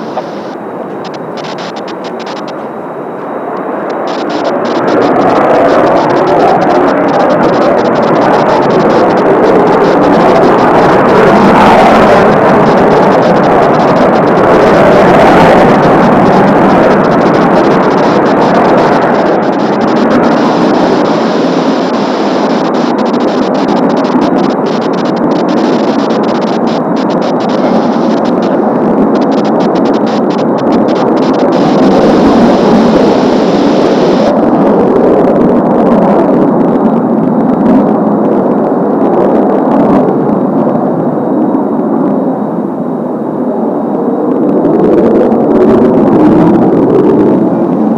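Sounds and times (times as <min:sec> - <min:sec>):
thin high jet whine: 0:00.0 - 0:35.3
jet aircraft flying over: 0:00.0 - 0:47.9.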